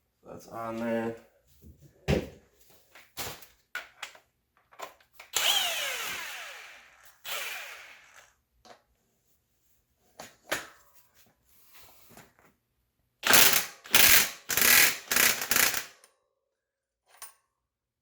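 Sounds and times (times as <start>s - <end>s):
impact wrench hammering: 13.3s - 16.0s.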